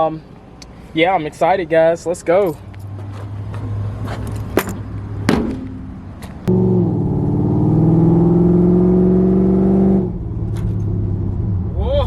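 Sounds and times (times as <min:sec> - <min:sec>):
car engine accelerating: 0:06.4 - 0:12.0.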